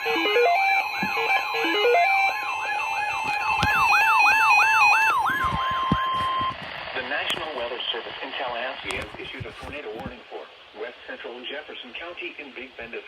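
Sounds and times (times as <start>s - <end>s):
stepping beeps: 0.0s - 4.0s
steady single-pitch alert tone: 0.0s - 6.4s
sweeping siren-like alarm tone: 0.0s - 6.6s.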